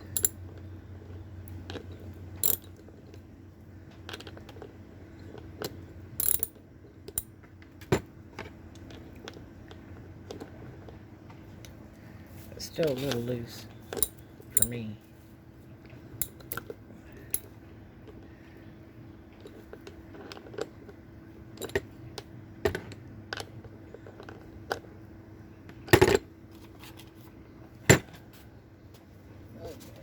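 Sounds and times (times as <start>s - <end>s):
socket wrench clicking on metal: 0.0s - 0.4s, 2.4s - 2.7s, 6.2s - 6.5s, 16.2s - 16.6s.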